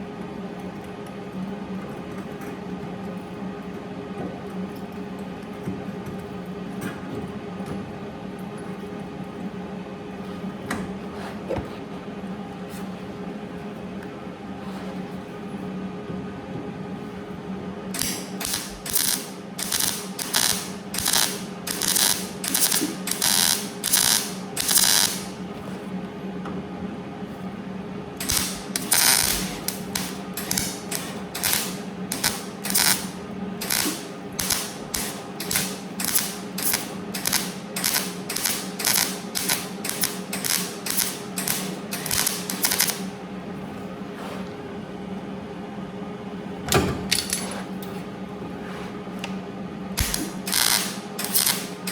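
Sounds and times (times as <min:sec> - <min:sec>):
welder crackling bursts: 0:18.0 - 0:25.4, 0:28.2 - 0:43.1, 0:50.0 - 0:51.9.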